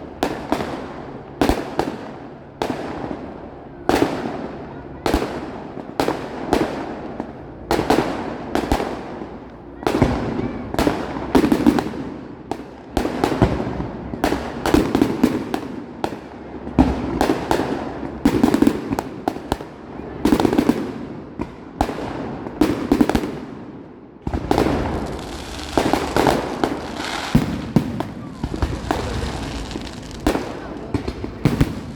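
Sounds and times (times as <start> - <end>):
fireworks bursting and crackling: 0.0 - 31.9
rumbling echoes: 24.3 - 31.9.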